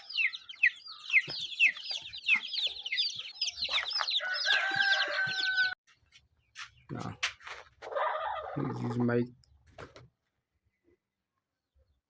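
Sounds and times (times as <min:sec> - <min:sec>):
chicks peeping: 0:00.0 - 0:05.8.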